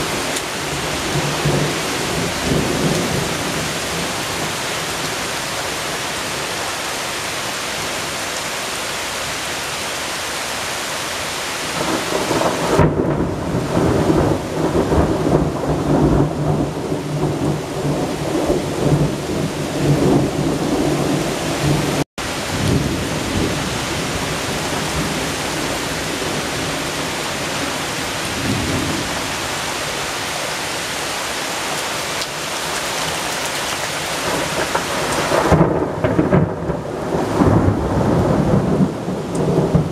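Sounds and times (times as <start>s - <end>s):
rolling thunder: 0.0s - 4.6s, 11.8s - 27.6s, 34.2s - 39.9s
heavy rain hissing: 0.0s - 39.9s.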